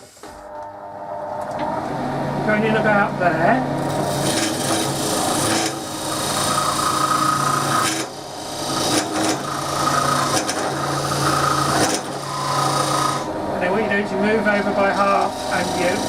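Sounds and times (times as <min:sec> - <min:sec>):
wood lathe humming: 0:01.8 - 0:16.0
tool scraping spinning wood: 0:03.8 - 0:13.3, 0:14.4 - 0:16.0.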